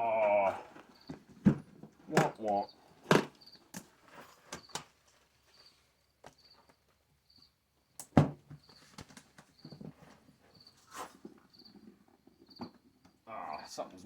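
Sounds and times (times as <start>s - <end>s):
crickets chirping: 0.0s - 1.2s, 2.2s - 3.8s, 5.5s - 8.0s, 10.5s - 14.0s.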